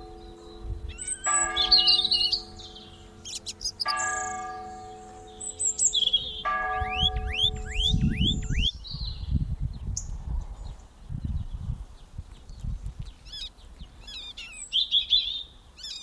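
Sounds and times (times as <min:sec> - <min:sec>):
large bell ringing: 0:00.0 - 0:08.6
low hum: 0:00.0 - 0:08.6
birds chirping: 0:00.0 - 0:16.0.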